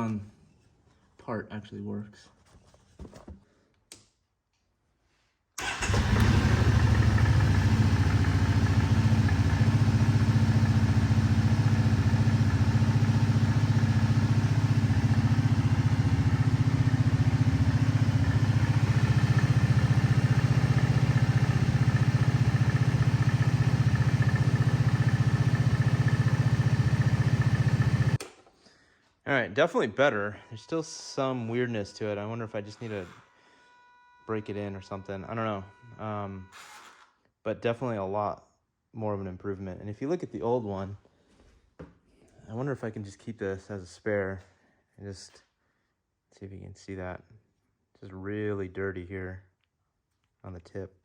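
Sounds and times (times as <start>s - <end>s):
engine starting and idling: 5.6s - 28.2s.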